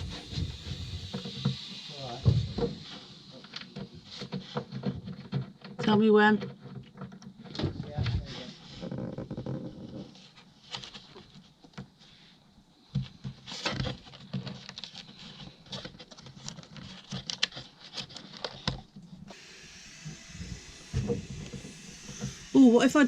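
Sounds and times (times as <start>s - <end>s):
steady hiss: 0.0s - 4.8s, 19.3s - 23.0s.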